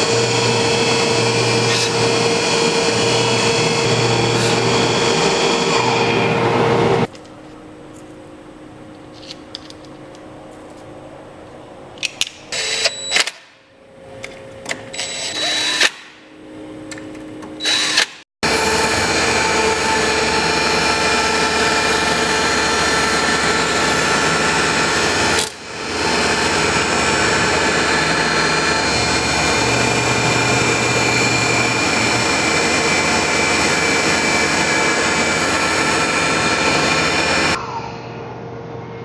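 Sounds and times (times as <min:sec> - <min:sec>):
milling machine cutting with whine: 0:00.0 - 0:07.1, 0:12.6 - 0:13.3, 0:17.6 - 0:37.6.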